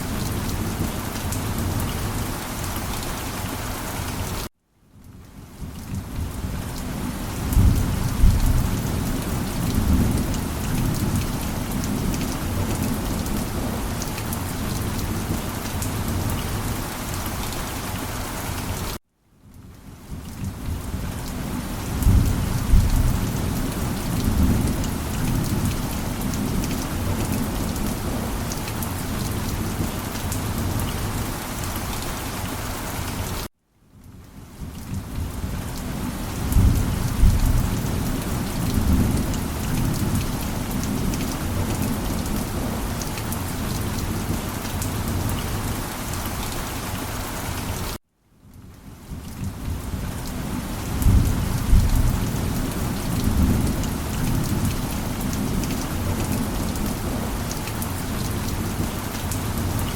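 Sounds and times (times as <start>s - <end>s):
heavy rain: 0.0s - 59.9s
rolling thunder: 7.5s - 11.2s, 22.0s - 28.3s, 36.4s - 38.0s.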